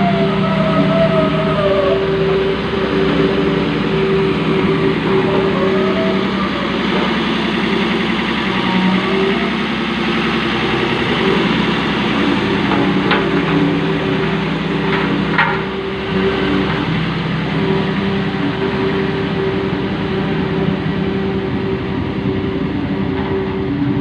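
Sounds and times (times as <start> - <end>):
road roller engine running: 0.0 - 24.0.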